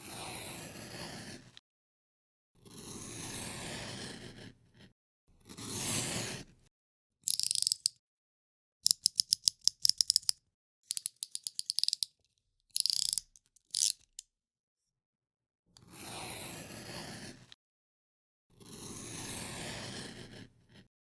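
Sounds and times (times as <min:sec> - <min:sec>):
box cutter blade ratcheting clicks: 0:07.3 - 0:08.0, 0:08.8 - 0:12.1, 0:12.7 - 0:14.2.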